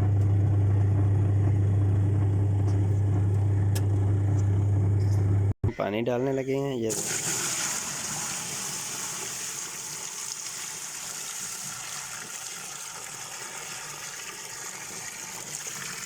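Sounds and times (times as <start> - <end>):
water gushing into washing machine: 6.9 - 16.0.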